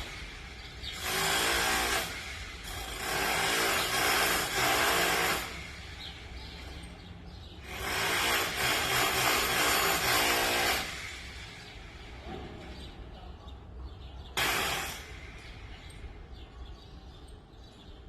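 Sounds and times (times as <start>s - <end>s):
electric demolition hammer hammering: 0.9s - 5.8s, 7.6s - 11.2s.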